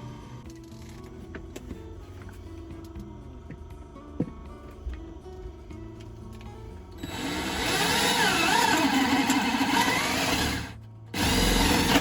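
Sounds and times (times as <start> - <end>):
power drill boring through fiberglass: 7.0 - 12.0.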